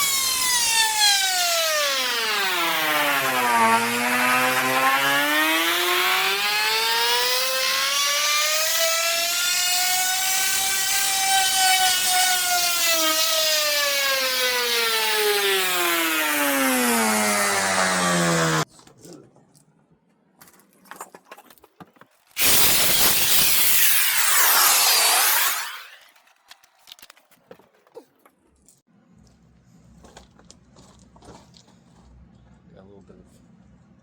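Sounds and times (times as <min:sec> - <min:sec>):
power tool motor whining on wood: 0:00.0 - 0:18.7, 0:22.4 - 0:26.3.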